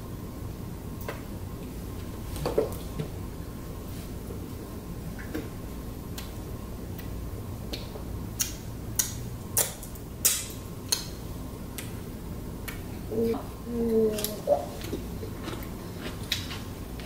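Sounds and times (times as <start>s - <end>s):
steady low hum: 0.0s - 17.0s
eating clicks and smacks: 6.1s - 12.0s, 12.6s - 12.9s, 14.1s - 16.7s.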